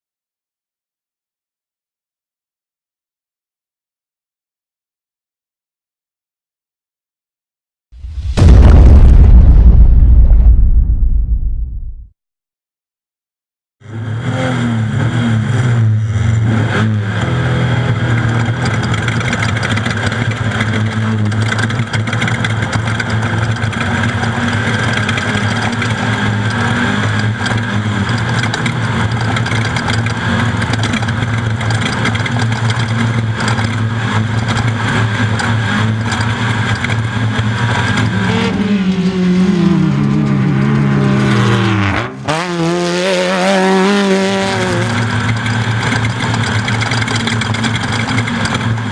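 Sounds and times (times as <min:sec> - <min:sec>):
race vehicle engine revving: 0:23.2 - 0:48.7.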